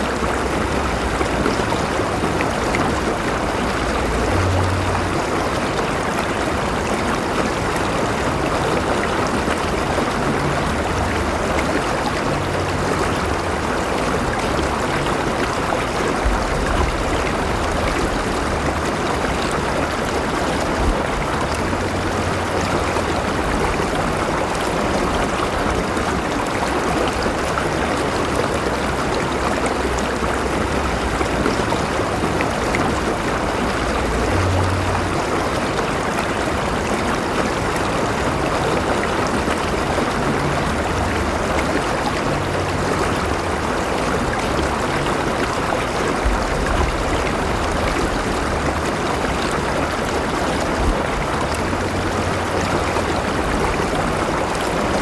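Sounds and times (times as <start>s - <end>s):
river water rushing over rocks: 0.0s - 55.0s
low rumble: 10.4s - 25.9s, 40.2s - 55.0s.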